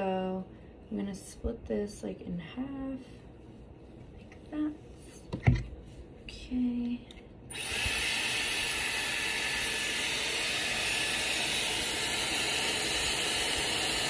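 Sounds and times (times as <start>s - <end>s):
hair styler blowing air: 7.5s - 14.0s.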